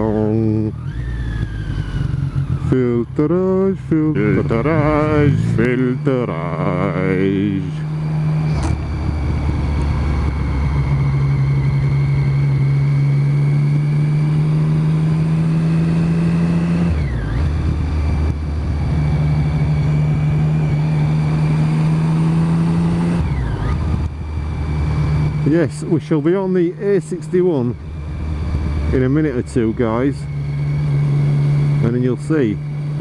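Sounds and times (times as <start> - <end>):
motorcycle engine running: 0.0 - 33.0
wind and road noise: 0.0 - 33.0.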